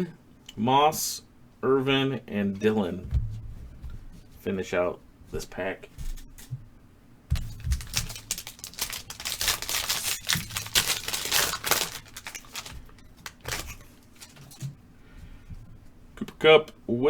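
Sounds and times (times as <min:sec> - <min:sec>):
card pack wrapper crinkling: 0:07.4 - 0:14.6
cards rustling: 0:07.4 - 0:14.7.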